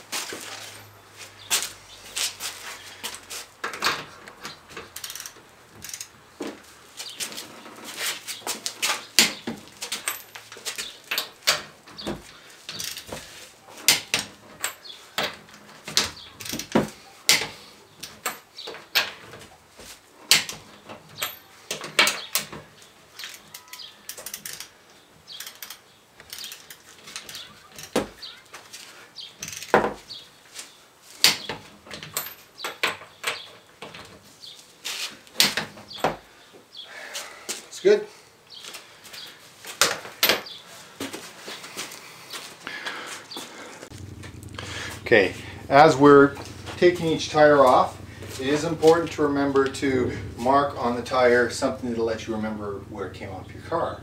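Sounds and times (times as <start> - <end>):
hand tools clinking and knocking: 3.0 - 19.6, 20.2 - 28.3, 31.2 - 34.3.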